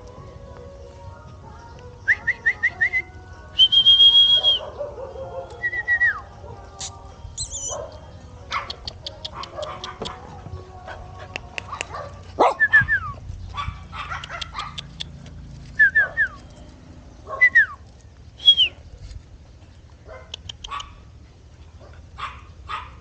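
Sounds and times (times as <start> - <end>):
puppies yipping and whining: 4.2 - 17.8.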